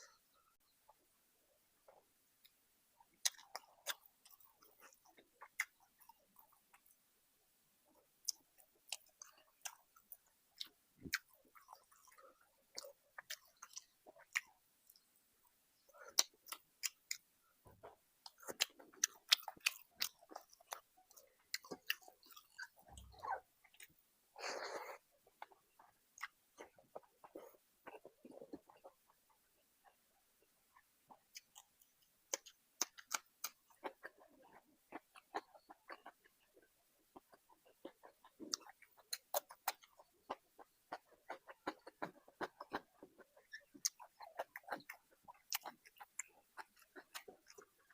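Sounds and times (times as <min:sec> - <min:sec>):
chewing with wet mouth smacks: 0:03.2 - 0:07.0, 0:08.2 - 0:15.0, 0:15.8 - 0:47.9.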